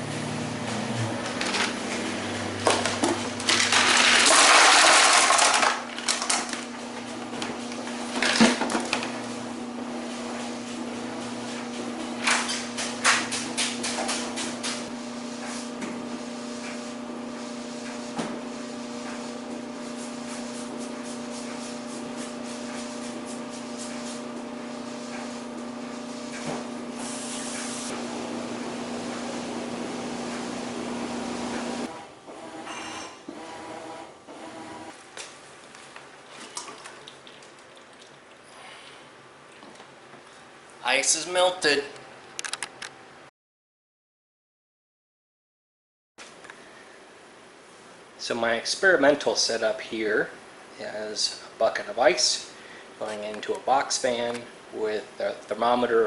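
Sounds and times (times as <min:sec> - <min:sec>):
ice clinking and clattering: 0:03.5 - 0:06.6.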